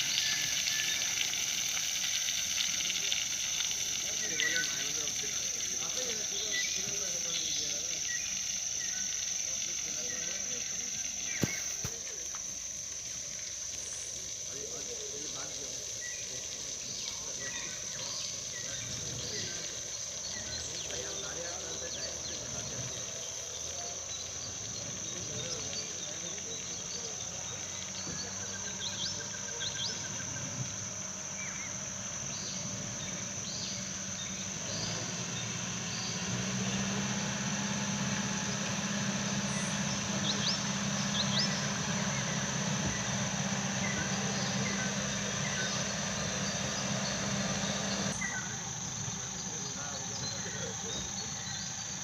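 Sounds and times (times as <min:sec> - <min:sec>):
insects droning: 0:00.0 - 0:52.0
low steady hum: 0:00.0 - 0:52.0.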